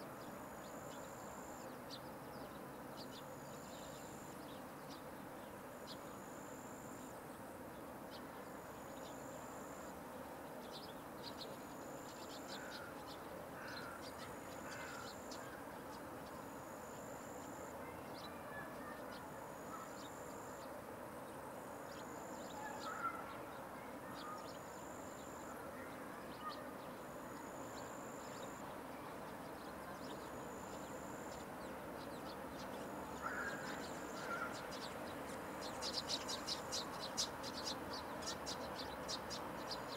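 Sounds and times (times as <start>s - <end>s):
insect stridulating buzz: 0.0s - 2.1s, 3.0s - 18.4s, 19.1s - 25.7s, 26.5s - 39.9s
steady background noise: 0.0s - 39.9s
short bird calls: 12.0s - 15.7s, 17.5s - 20.6s, 22.0s - 26.8s, 33.2s - 34.9s.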